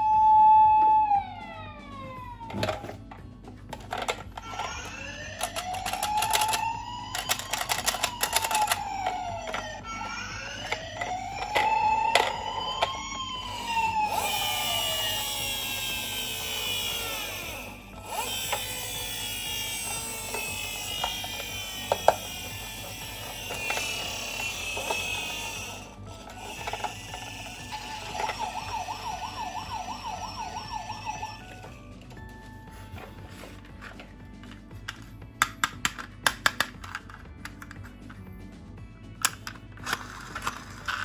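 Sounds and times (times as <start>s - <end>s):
toy siren wailing: 0.0s - 3.0s, 3.9s - 31.9s
plastic toy car rolling: 2.5s - 31.8s, 33.3s - 38.2s, 39.2s - 41.0s.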